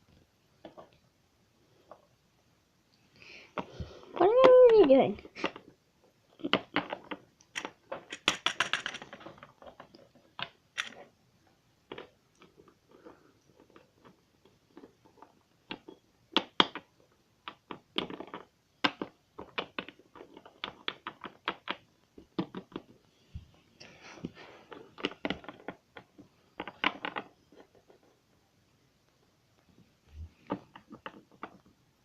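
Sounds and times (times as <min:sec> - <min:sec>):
plastic toys clicking on hard surface: 0:06.4 - 0:11.1.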